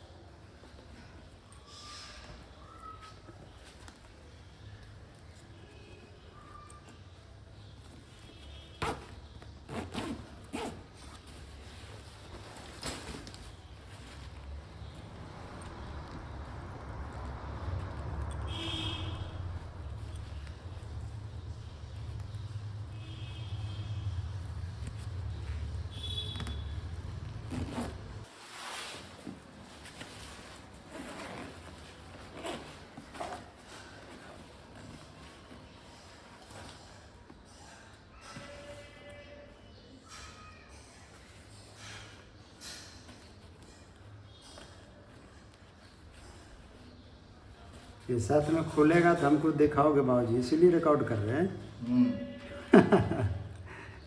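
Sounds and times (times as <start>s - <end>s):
low traffic rumble: 12.4s - 28.3s.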